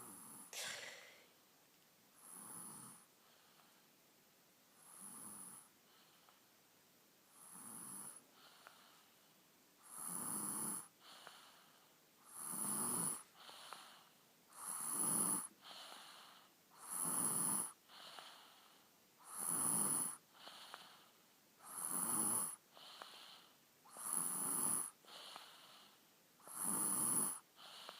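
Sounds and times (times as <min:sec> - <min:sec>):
boy snoring: 0:02.2 - 0:03.1, 0:04.8 - 0:05.7, 0:07.4 - 0:08.9, 0:09.8 - 0:11.6, 0:12.2 - 0:18.6, 0:19.2 - 0:27.9.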